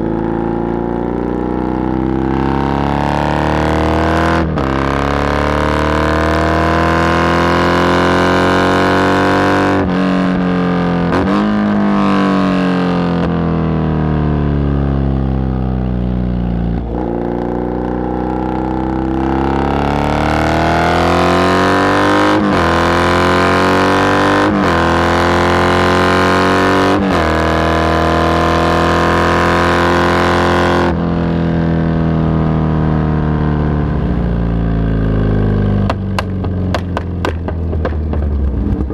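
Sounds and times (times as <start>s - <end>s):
motorcycle engine revving: 0.0s - 38.9s.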